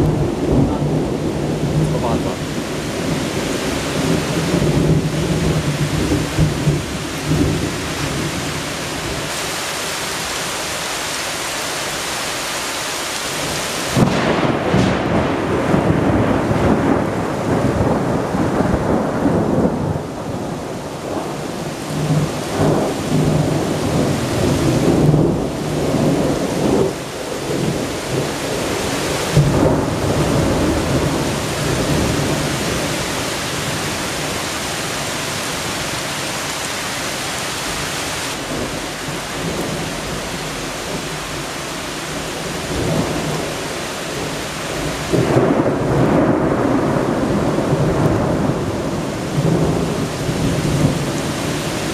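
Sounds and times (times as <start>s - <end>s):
thunder rumbling: 0.0s - 10.9s, 13.3s - 51.9s
steady rain: 0.0s - 51.9s.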